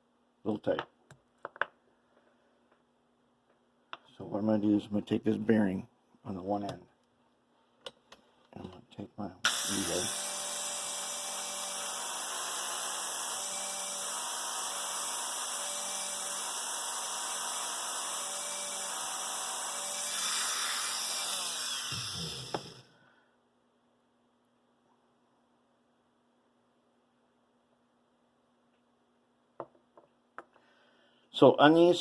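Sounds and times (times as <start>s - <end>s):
high-speed rotary tool running: 9.5s - 22.9s.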